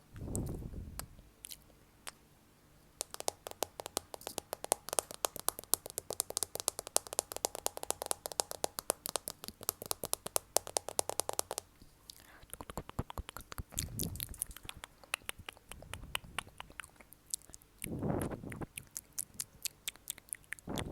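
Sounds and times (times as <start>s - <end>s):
fast sharp tapping: 3.0s - 11.7s.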